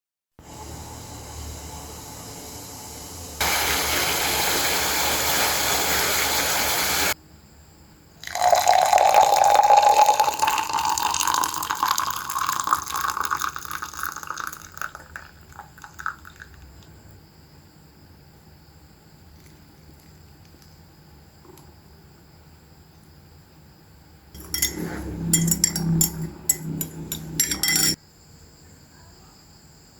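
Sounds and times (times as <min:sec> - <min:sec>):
liquid pouring into container: 0:08.2 - 0:17.0.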